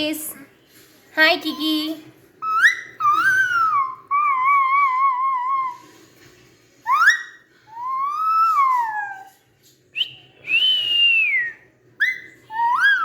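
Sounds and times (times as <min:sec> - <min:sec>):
parrot whistling: 0:02.4 - 0:05.9, 0:06.8 - 0:09.3, 0:10.0 - 0:13.0.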